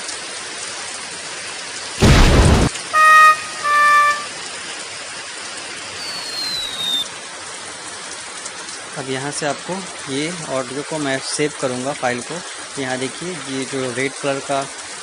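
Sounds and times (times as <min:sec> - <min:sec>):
short loud burst: 0:02.0 - 0:04.3
faint falling whistle: 0:03.0 - 0:04.3, 0:06.0 - 0:07.1
pitched electronic tones: 0:03.0 - 0:04.3
rain-like hiss: 0:05.9 - 0:15.0.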